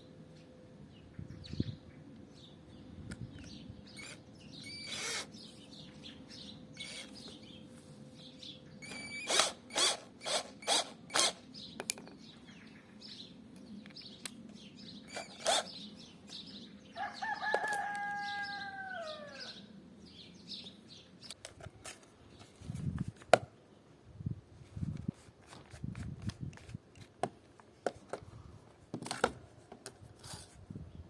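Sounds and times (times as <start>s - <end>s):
rooster crowing: 16.9s - 19.7s.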